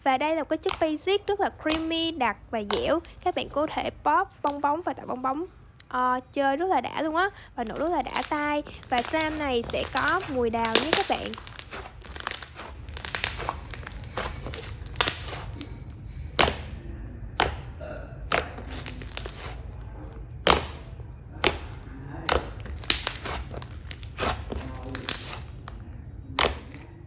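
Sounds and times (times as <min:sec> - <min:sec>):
air bubbles popping in slime: 0:07.7 - 0:15.8, 0:16.4 - 0:16.8, 0:17.4 - 0:19.8, 0:20.4 - 0:25.8, 0:26.4 - 0:26.8.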